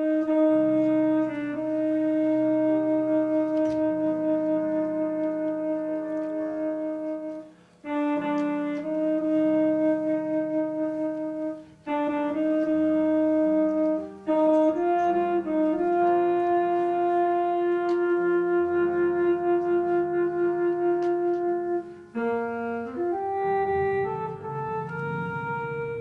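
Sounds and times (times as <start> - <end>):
slow instrumental music: 0.0 - 26.0.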